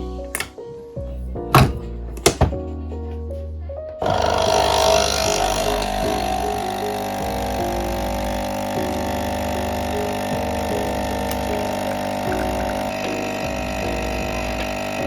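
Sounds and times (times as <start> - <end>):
coffee machine pump buzzing: 4.0 - 15.0.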